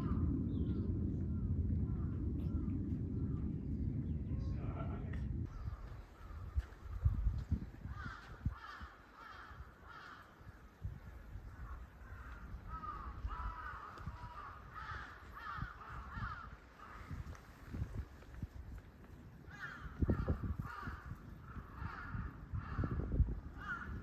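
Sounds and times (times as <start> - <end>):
microphone bumps and rumble: 0.0 - 8.8
crow cawing: 7.8 - 10.7, 11.6 - 17.4, 19.5 - 24.0.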